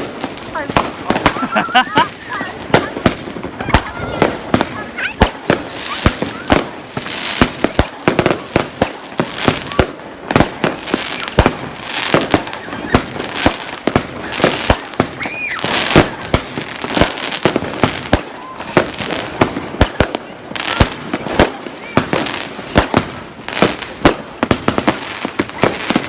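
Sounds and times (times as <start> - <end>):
firecrackers and rockets banging: 0.0 - 26.0
fireworks crackling: 0.0 - 26.0
firework whistle: 14.2 - 16.4.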